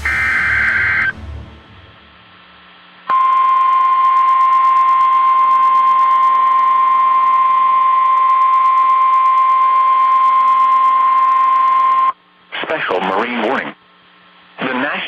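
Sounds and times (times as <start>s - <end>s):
steady warning alarm tone: 0.0s - 1.2s.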